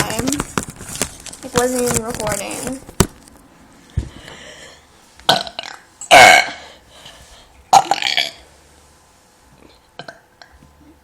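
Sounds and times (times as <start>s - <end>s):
person burping loudly: 5.3s - 6.8s, 7.7s - 8.4s, 10.0s - 10.5s.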